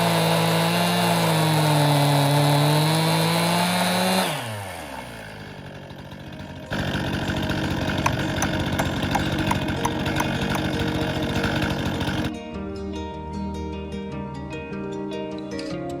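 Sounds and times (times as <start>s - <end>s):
chainsaw revs falling to idle: 0.0s - 12.3s
engine idling with ticks: 5.0s - 12.3s.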